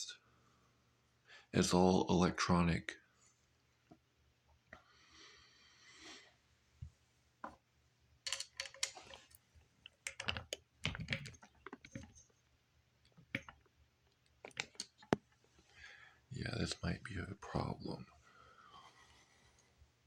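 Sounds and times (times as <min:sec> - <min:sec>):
plastic parts clicking and tapping: 0:08.3 - 0:12.4, 0:13.0 - 0:15.5.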